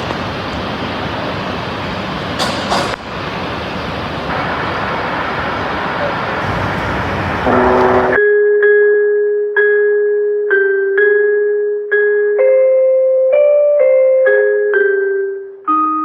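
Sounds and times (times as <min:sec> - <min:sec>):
road traffic: 0:00.0 - 0:08.2.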